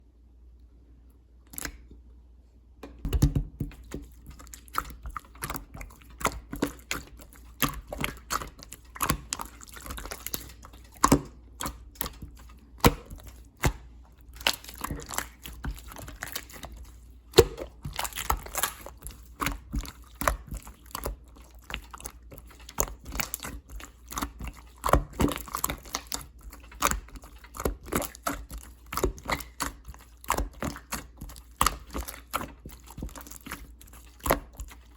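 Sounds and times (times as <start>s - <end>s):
slime squished by hand: 1.5s - 1.9s, 3.1s - 34.9s.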